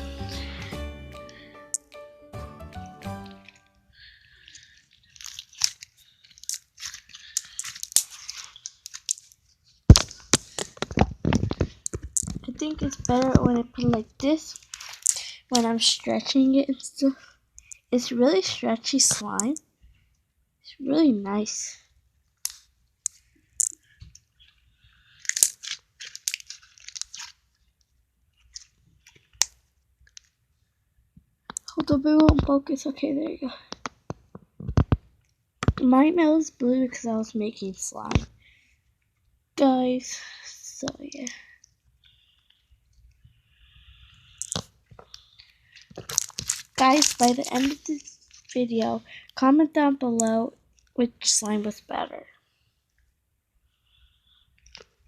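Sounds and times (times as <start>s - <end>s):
slime crackling and popping: 4.6s - 15.7s, 25.2s - 27.4s, 44.3s - 44.7s, 46.0s - 48.6s.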